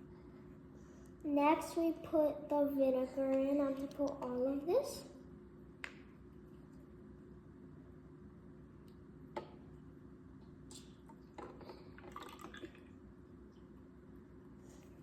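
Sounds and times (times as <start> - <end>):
liquid trickling and dripping: 10.7 - 13.0.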